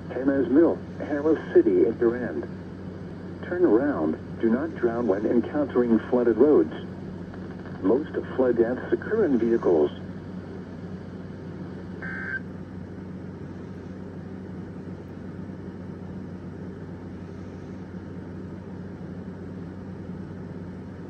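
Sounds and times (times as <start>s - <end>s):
radio receiver hiss and hum: 0.0s - 21.0s.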